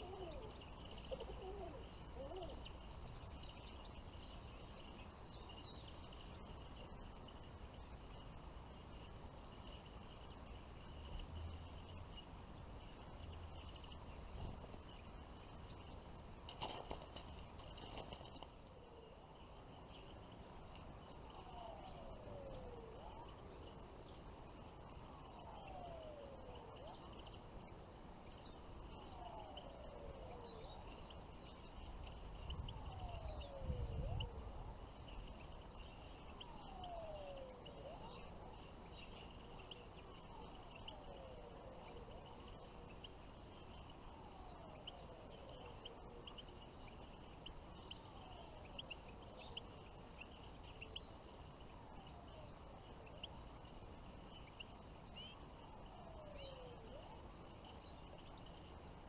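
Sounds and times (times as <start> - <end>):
songbirds chirping: 0.0 - 59.0
low downward gliding whistle: 32.6 - 34.7, 36.3 - 38.6.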